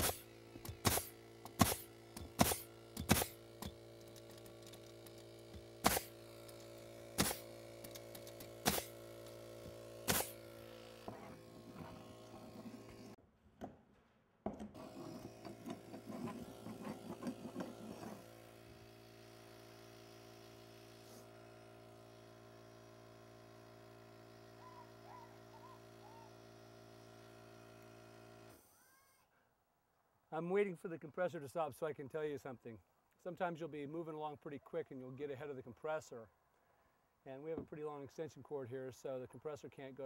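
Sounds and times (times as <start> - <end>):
nail gun firing: 0.0 - 10.5
air compressor humming: 0.0 - 13.2, 14.8 - 28.7.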